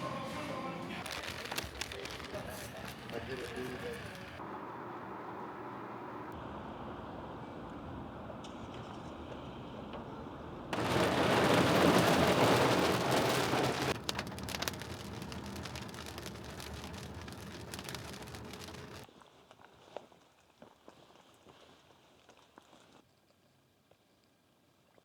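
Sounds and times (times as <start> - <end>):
rain hissing: 0.0 - 4.4, 10.8 - 19.1
raindrops pattering: 1.0 - 4.4, 10.8 - 19.1
heavy downpour: 10.7 - 19.0.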